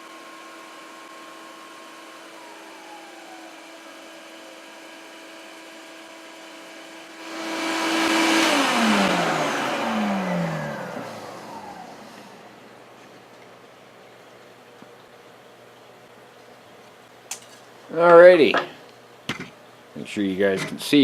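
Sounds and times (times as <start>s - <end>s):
motors winding down: 0.0s - 12.8s
sander motor humming: 0.0s - 12.9s
shop vacuum running: 0.0s - 13.0s.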